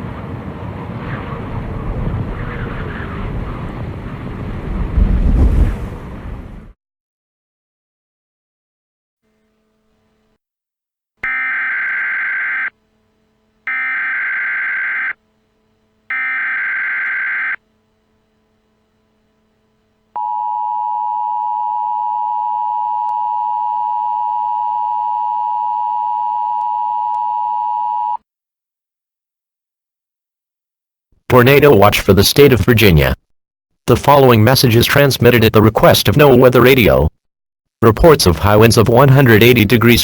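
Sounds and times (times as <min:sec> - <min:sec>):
screechy digital data tones: 0:11.2 - 0:12.8, 0:13.7 - 0:15.2, 0:16.1 - 0:17.6
steady attention tone: 0:11.2 - 0:28.1.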